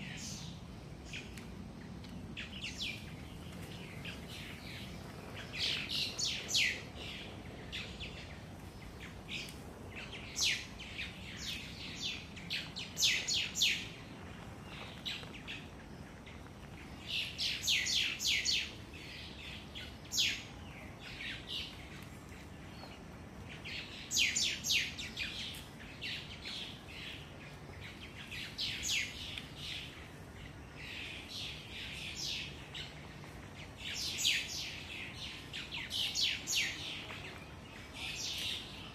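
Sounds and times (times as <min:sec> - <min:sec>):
birds chirping: 0:00.0 - 0:38.9.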